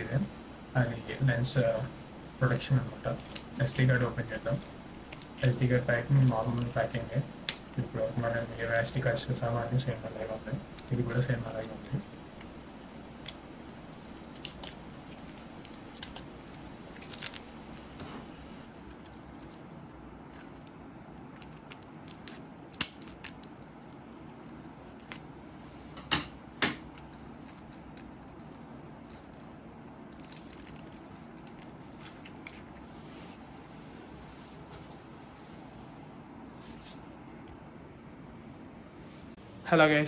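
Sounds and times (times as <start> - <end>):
plastic packaging crackling: 0.0 - 25.7, 26.8 - 33.4
plastic snapping: 6.2 - 7.8, 21.4 - 23.6.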